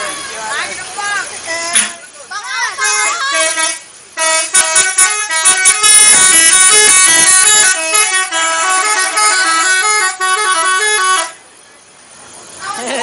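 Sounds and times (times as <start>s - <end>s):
multi-tone bus horn tune: 1.4s - 11.4s.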